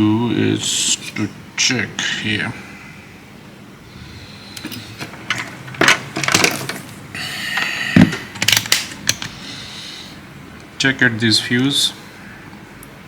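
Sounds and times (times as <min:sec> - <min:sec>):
tools clicking and knocking: 0:08.0 - 0:09.3.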